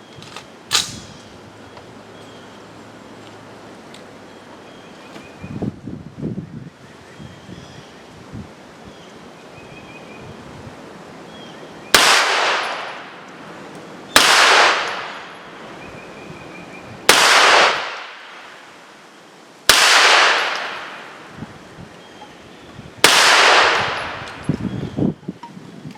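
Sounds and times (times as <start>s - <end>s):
gunshots with rolling echo: 11.9s - 13.2s, 14.1s - 15.6s, 17.1s - 18.6s, 19.7s - 21.3s, 23.0s - 24.4s.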